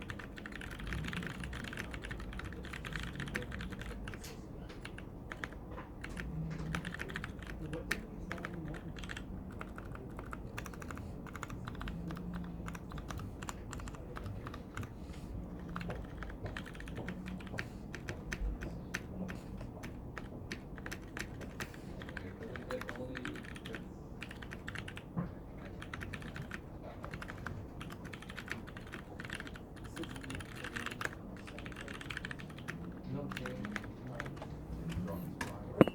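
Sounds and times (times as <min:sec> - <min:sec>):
fast typing on mechanical keyboard: 0:00.0 - 0:14.9, 0:15.5 - 0:34.4.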